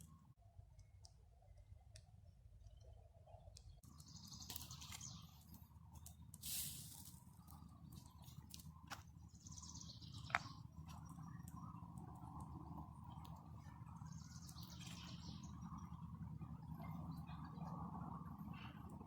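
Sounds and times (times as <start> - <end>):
rustle: 6.3 - 7.6
bird calls: 9.2 - 19.0.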